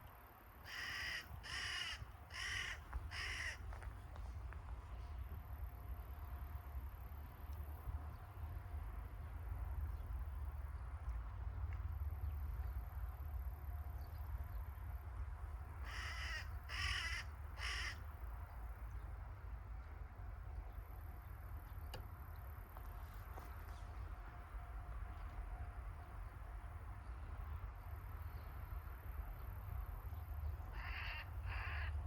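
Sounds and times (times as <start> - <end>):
crow cawing: 0.7 - 3.8, 15.8 - 18.0, 30.7 - 32.0
steady low rumble: 1.3 - 32.0.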